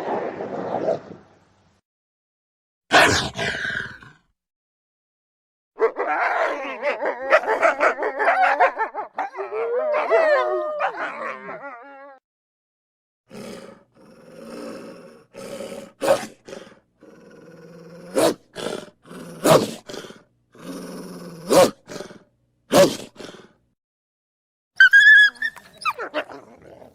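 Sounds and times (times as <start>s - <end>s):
growls and yelps: 2.9s - 4.3s, 5.8s - 12.2s, 13.3s - 23.6s, 24.8s - 26.9s
wolves howling: 5.8s - 12.2s.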